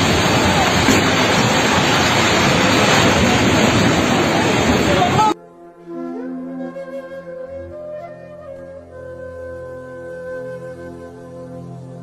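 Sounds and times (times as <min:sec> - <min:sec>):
loud rushing noise: 0:00.0 - 0:05.4.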